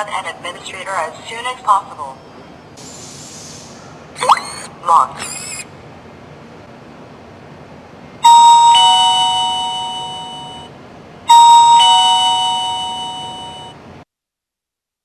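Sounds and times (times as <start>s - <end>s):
ding-dong doorbell chime: 8.2s - 10.7s, 11.3s - 13.8s.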